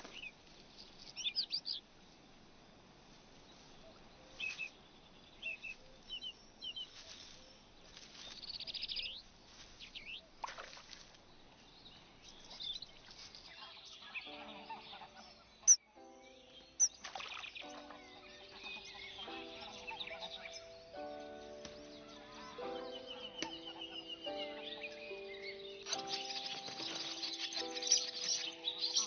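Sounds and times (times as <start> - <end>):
bird chirping and tweeting: 0.0 - 1.8, 11.6 - 29.0.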